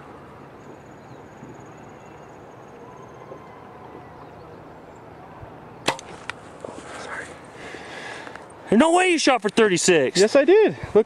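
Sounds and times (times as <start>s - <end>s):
arrow striking target thud: 5.8s - 6.3s.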